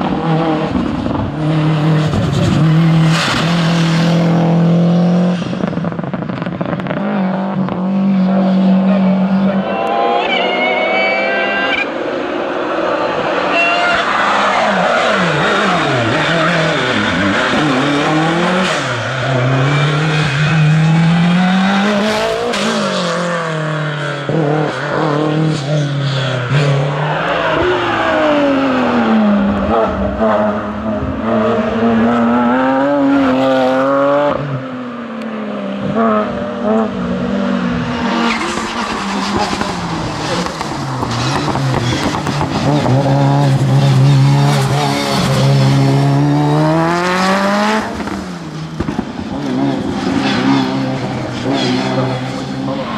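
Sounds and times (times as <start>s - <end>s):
racing car engine revving: 10.8s - 34.5s, 35.8s - 52.9s.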